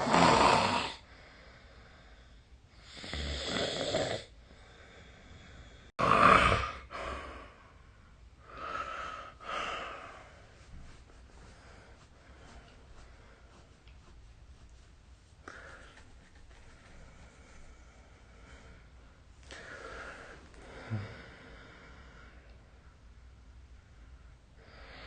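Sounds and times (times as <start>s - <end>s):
person snoring: 0.0s - 1.0s, 2.8s - 4.3s, 6.0s - 7.6s.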